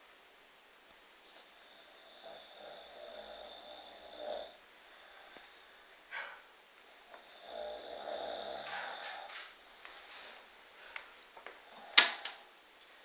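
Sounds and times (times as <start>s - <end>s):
man snoring: 1.5s - 6.3s, 6.9s - 9.5s.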